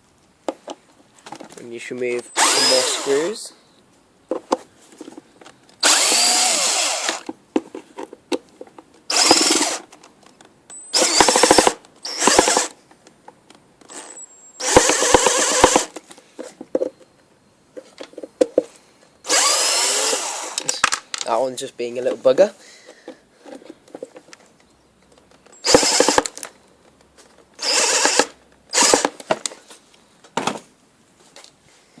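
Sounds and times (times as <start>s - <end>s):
electric screwdriver whirring: 2.4s - 3.2s, 5.8s - 7.3s, 9.1s - 9.8s, 11.0s - 12.8s, 13.9s - 16.0s, 19.3s - 20.6s, 25.6s - 26.4s, 27.6s - 29.2s.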